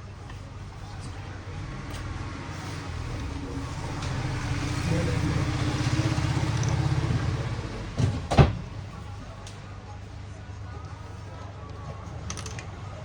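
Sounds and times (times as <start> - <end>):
vehicle engine running: 0.2 - 9.2.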